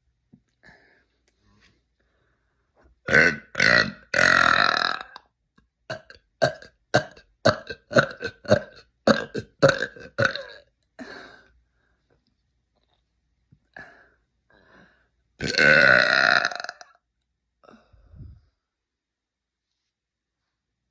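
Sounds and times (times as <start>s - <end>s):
woman belching: 3.1s - 5.2s, 5.9s - 10.7s, 15.4s - 16.9s.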